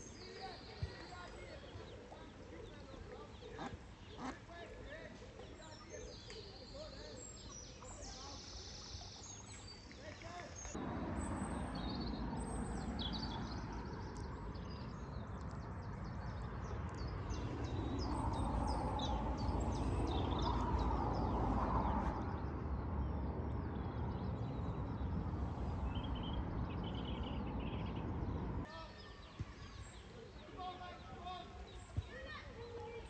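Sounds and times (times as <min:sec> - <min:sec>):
small birds chirping: 0:00.0 - 0:33.0
steady low rumble: 0:10.8 - 0:28.7.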